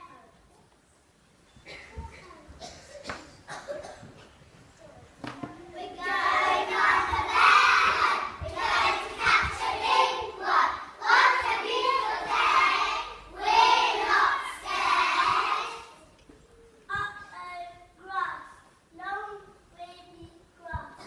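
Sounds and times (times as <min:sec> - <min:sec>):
children singing in unison: 0:06.0 - 0:16.0.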